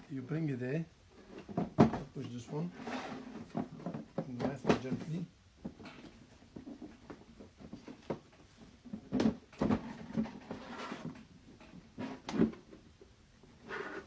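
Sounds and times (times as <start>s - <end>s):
hard plastic parts knocking and clicking: 1.4s - 2.4s, 3.4s - 10.5s.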